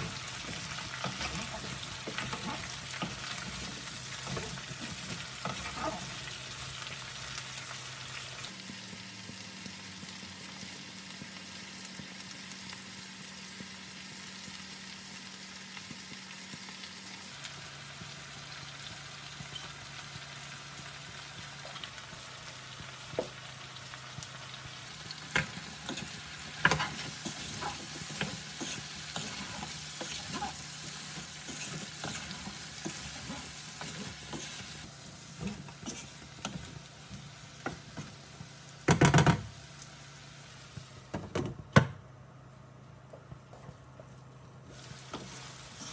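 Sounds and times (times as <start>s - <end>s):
spatula scraping a pan: 0.0s - 6.3s, 25.3s - 36.7s
vegetables sizzling in oil: 0.0s - 41.1s, 44.7s - 45.9s.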